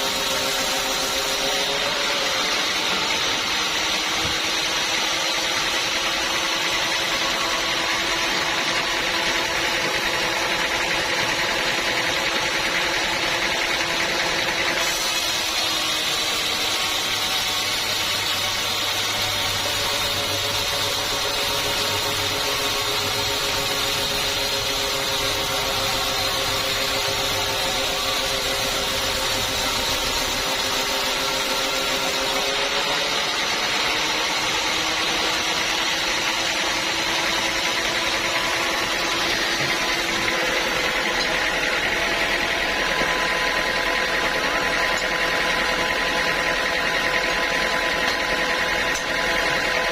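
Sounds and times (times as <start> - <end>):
sawmill saw cutting a log: 0.0 - 49.9.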